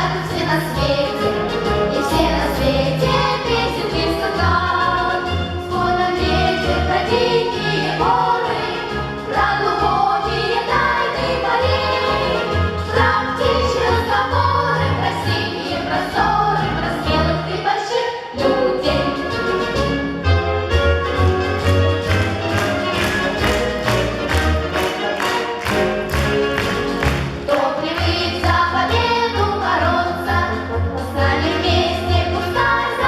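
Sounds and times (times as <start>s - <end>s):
choir singing with instruments: 0.0s - 19.8s, 21.4s - 33.0s
steady bass line: 21.2s - 29.6s.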